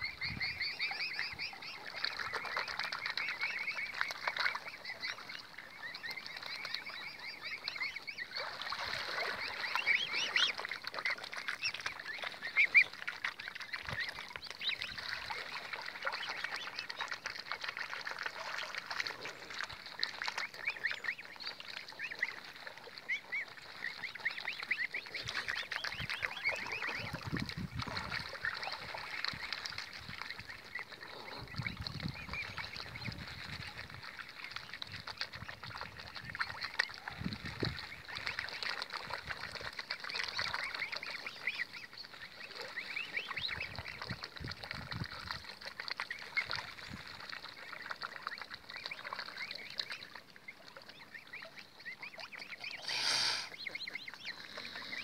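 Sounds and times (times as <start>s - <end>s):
waterfowl calling: 50.7s - 55.0s.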